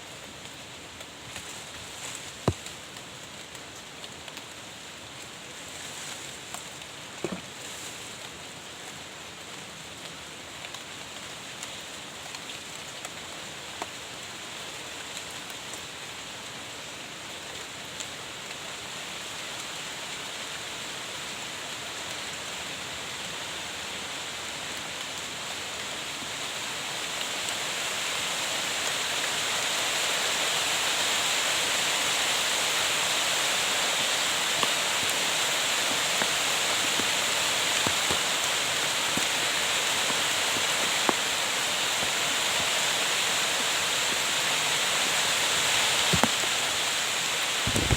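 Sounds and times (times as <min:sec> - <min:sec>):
sharp ticks of raindrops: 0:00.1 - 0:07.2, 0:08.2 - 0:16.3, 0:24.2 - 0:29.7, 0:30.8 - 0:47.9
heavy rain falling: 0:23.6 - 0:47.9.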